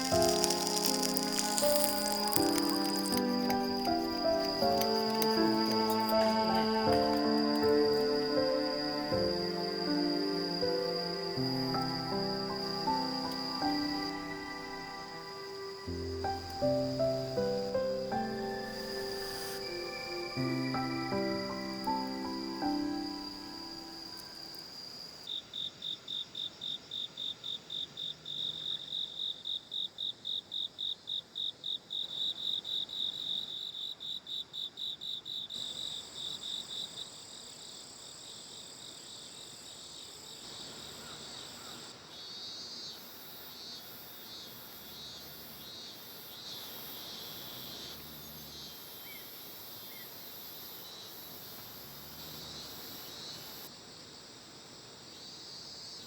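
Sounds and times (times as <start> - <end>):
insect trills chorus: 0.0 - 29.4, 39.4 - 53.7
insect pulsing call: 0.0 - 31.0, 39.1 - 53.7.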